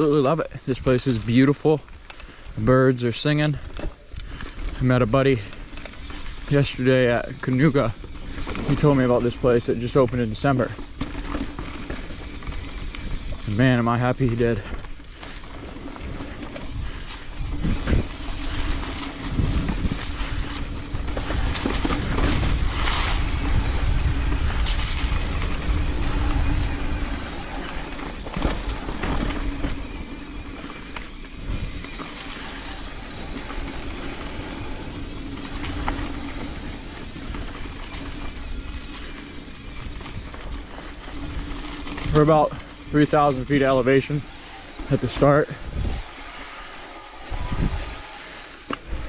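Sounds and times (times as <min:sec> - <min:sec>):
bike rattling: 0:00.0 - 0:49.0
bike tyres rumbling on dirt: 0:00.0 - 0:49.0
steady hum: 0:05.6 - 0:49.0
wind on microphone: 0:16.5 - 0:40.6, 0:45.0 - 0:46.2, 0:47.2 - 0:48.1.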